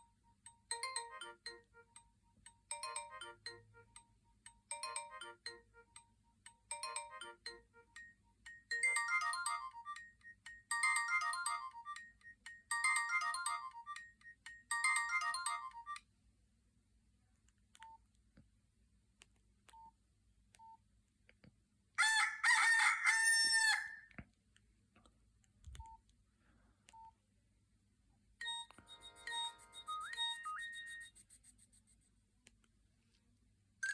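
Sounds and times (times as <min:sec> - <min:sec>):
synthesized beeping ringtone: 0:00.0 - 0:16.0, 0:28.4 - 0:31.3
electronic ringtone: 0:00.0 - 0:16.1, 0:28.4 - 0:31.3
rooster crow ringtone: 0:22.0 - 0:24.1.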